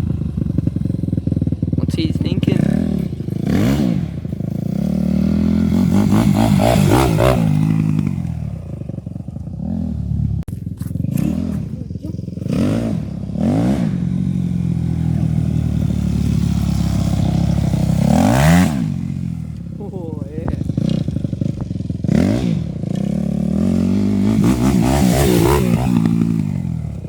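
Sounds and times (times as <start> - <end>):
motocross bike engine revving: 0.0 - 27.0.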